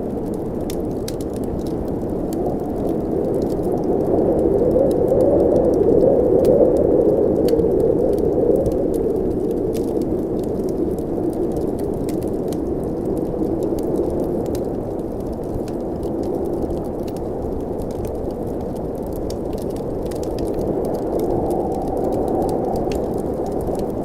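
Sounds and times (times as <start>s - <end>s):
wood fire crackling: 0.0s - 24.0s
snowstorm wind rushing: 1.8s - 11.4s, 20.4s - 24.0s.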